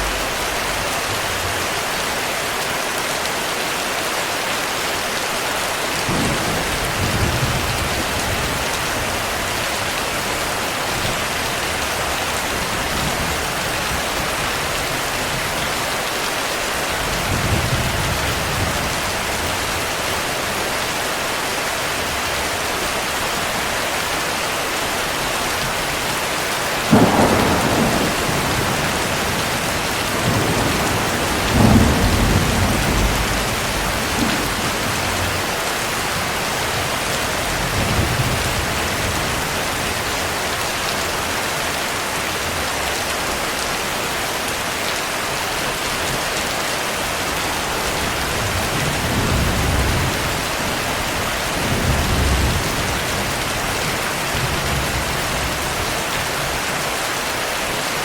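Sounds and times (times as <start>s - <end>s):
thunder rumbling: 0.0s - 1.8s, 26.9s - 40.2s
heavy rain: 0.0s - 58.0s
sharp thunder clap: 26.9s - 35.4s.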